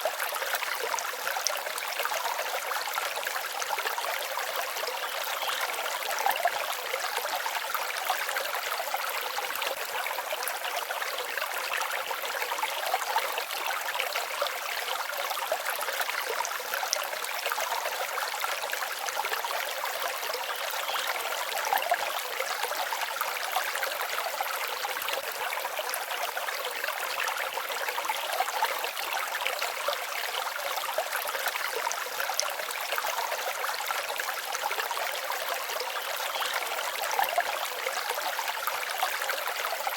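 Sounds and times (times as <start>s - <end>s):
stream babbling: 0.0s - 39.9s.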